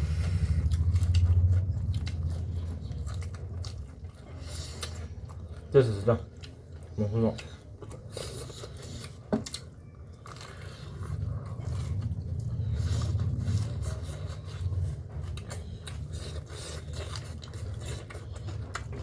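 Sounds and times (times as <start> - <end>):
low handling rumble: 0.0 - 5.5, 10.5 - 16.4
chewing and biting: 0.0 - 19.0.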